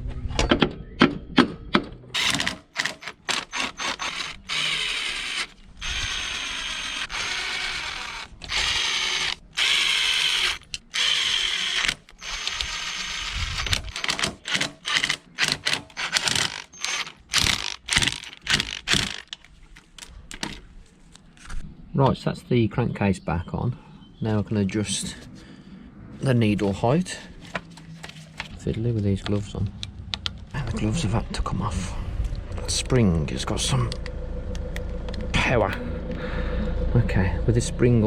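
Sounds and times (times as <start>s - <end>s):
power tool whirring: 2.2s - 19.4s
ratchet tool clicking: 2.2s - 19.4s.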